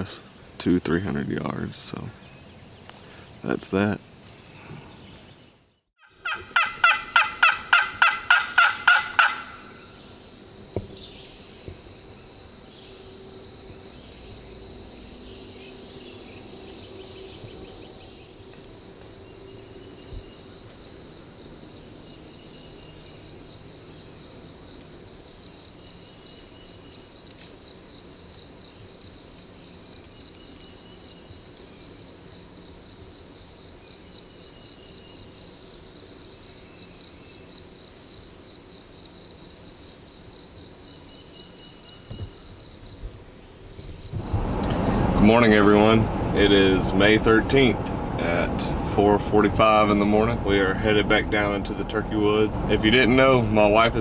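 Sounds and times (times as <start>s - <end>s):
insects buzzing: 0.0s - 47.7s
turkey gobbling: 6.0s - 9.8s.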